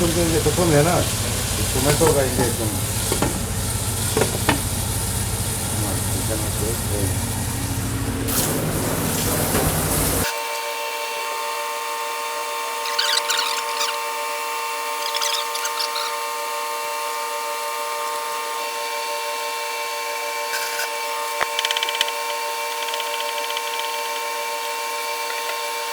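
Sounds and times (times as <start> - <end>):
small motor humming: 0.0 - 25.9
scratchy scraping: 15.0 - 16.2, 20.5 - 25.5.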